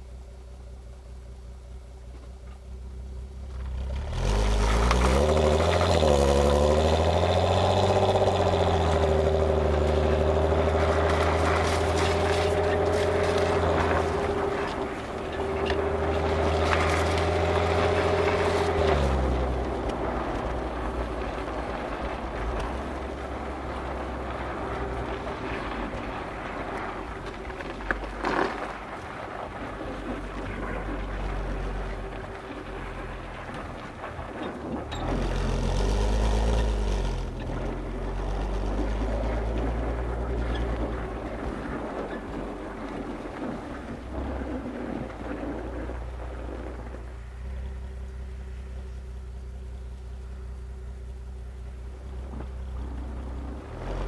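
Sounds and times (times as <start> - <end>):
car exhaust under way: 0.0 - 54.0
wind noise: 37.3 - 48.0.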